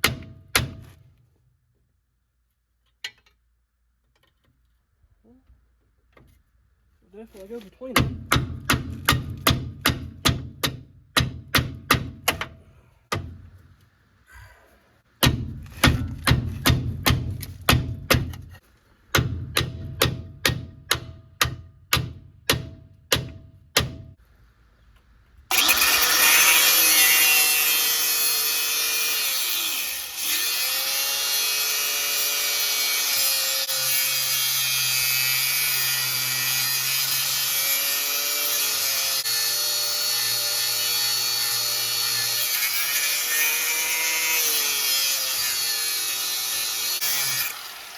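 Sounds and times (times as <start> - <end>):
angle grinder cutting metal: 25.5 - 47.9.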